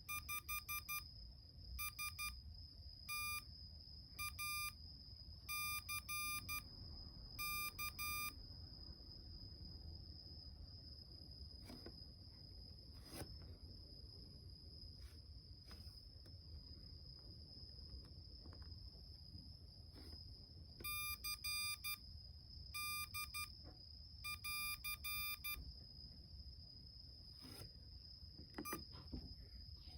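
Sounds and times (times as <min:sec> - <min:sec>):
morse code beeps: 0:00.0 - 0:01.0, 0:01.8 - 0:02.4, 0:03.1 - 0:03.5, 0:04.2 - 0:04.8, 0:05.5 - 0:06.7, 0:07.4 - 0:08.4, 0:20.8 - 0:22.0, 0:22.8 - 0:23.5, 0:24.2 - 0:25.6, 0:28.6 - 0:28.8.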